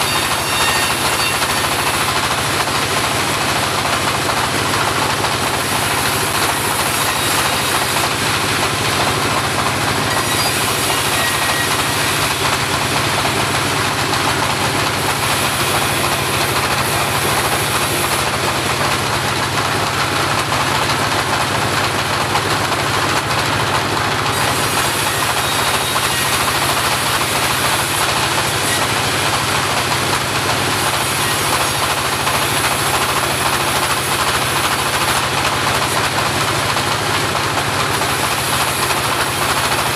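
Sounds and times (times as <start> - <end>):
portable bandsaw running: 0.0 - 39.9.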